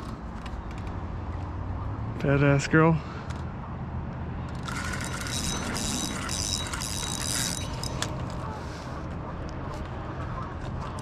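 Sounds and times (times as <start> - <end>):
fishing reel drag buzzing: 4.6 - 8.1
reel click: 4.6 - 8.2.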